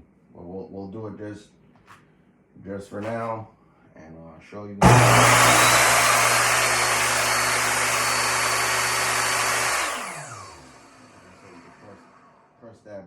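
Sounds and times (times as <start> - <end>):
table saw motor running and spinning down: 4.8 - 12.4.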